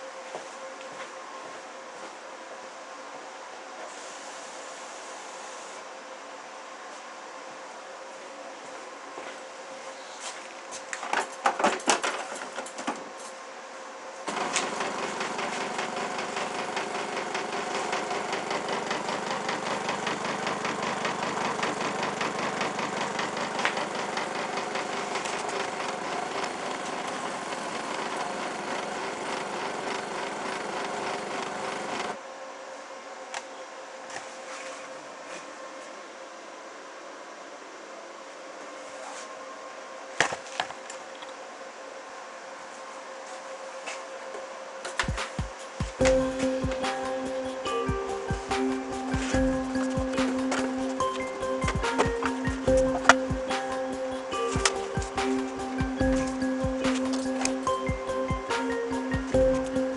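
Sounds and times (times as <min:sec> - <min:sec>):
coffee machine pump buzzing: 0:14.3 - 0:32.2, 0:46.0 - 0:59.9.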